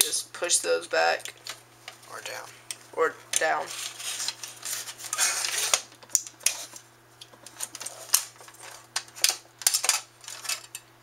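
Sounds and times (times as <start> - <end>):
scraping rustle: 3.5 - 5.8
metal parts rattling: 7.4 - 10.8.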